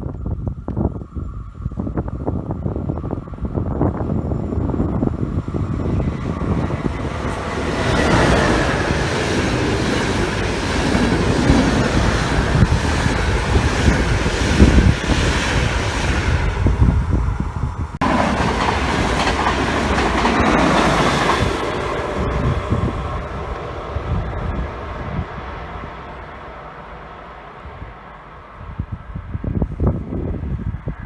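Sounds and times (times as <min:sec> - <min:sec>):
train wheels clattering on rails: 0:03.8 - 0:17.0, 0:18.0 - 0:25.3.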